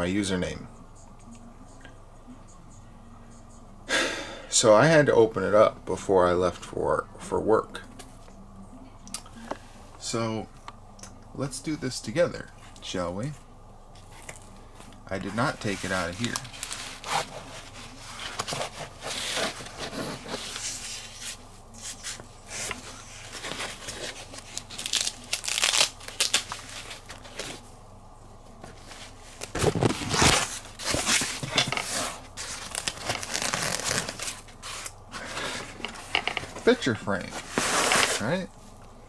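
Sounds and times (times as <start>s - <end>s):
packaging ripping and rustling: 15.4s - 27.6s, 28.7s - 38.4s.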